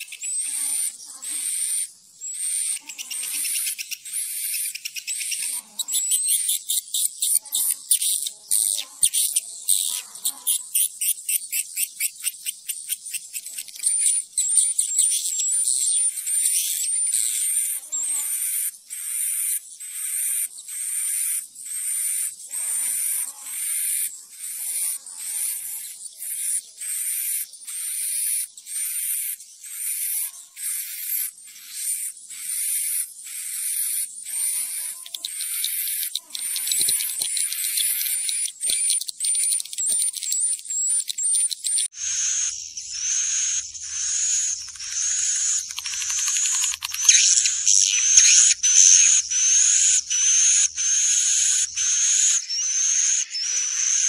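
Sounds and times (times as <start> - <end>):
high chittering: 0.0 - 54.0
swiftlet chirps: 34.3 - 51.6.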